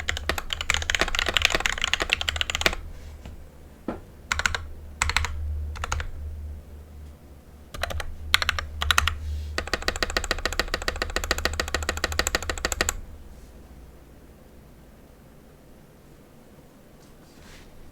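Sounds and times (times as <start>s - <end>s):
mechanical keyboard keystrokes: 0.0s - 3.4s, 4.3s - 6.1s, 7.8s - 13.0s
low table rumble: 0.0s - 14.0s.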